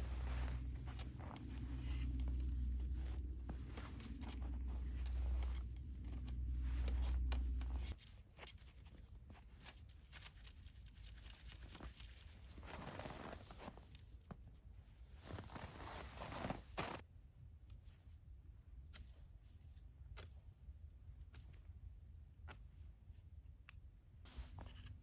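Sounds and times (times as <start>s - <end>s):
snow and ice crunching: 0.0s - 5.7s, 15.3s - 17.0s
low rumble: 0.0s - 8.0s.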